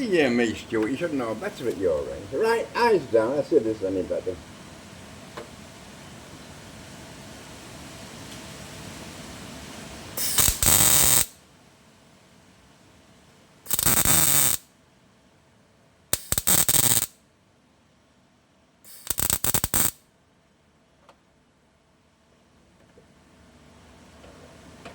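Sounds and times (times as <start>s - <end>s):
welder arc bursts: 10.2s - 11.4s, 13.7s - 14.6s, 16.2s - 17.1s, 18.9s - 20.0s.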